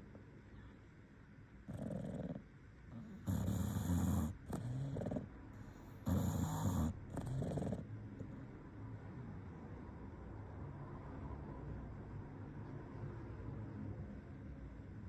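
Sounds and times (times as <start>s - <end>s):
dog snoring: 1.6s - 8.5s.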